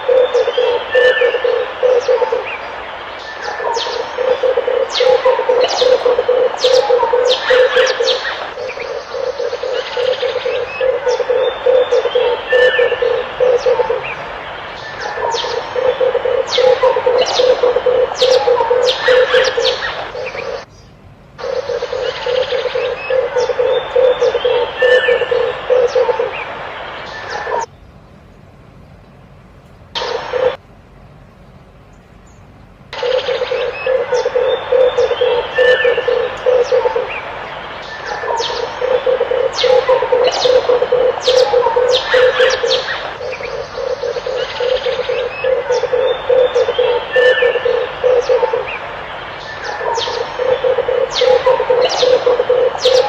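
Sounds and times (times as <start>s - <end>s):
dove cooing: 0.0s - 20.7s, 21.4s - 27.7s, 30.0s - 30.6s, 33.0s - 53.0s
high bird chirps: 33.0s - 53.0s.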